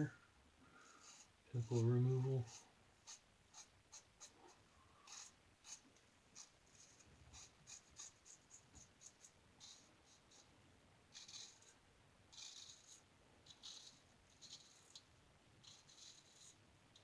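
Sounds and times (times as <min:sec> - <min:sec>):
razor scraping through stubble: 0:01.0 - 0:04.4, 0:11.1 - 0:17.0.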